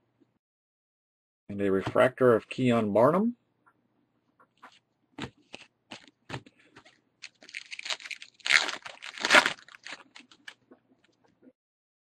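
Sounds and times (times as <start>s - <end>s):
foil wrapper crinkling and tearing: 7.2s - 10.6s.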